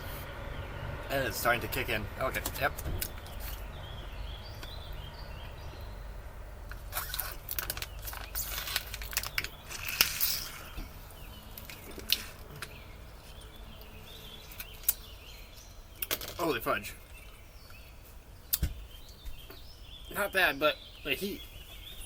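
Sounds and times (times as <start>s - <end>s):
person chewing with crunches: 6.8s - 13.5s.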